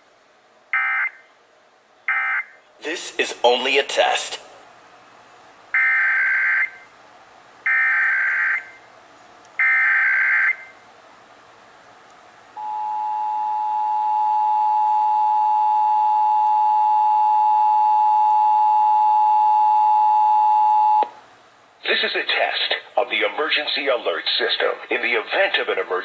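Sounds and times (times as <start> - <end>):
two-tone attention signal: 12.6 - 21.1.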